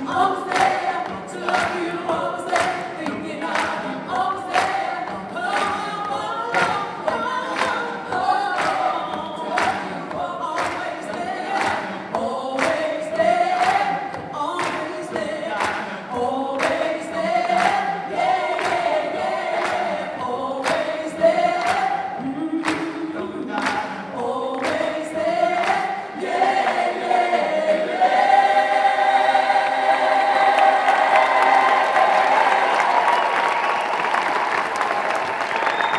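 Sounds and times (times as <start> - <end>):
choir singing in harmony: 0.0 - 35.9.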